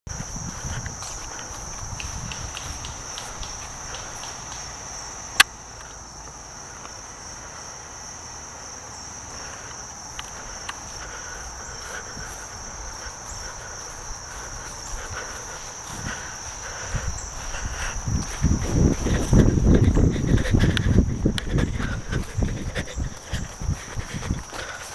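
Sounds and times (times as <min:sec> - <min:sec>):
insect chorus: 0:00.1 - 0:24.9
faint ticks: 0:00.8 - 0:04.7, 0:09.6 - 0:10.8.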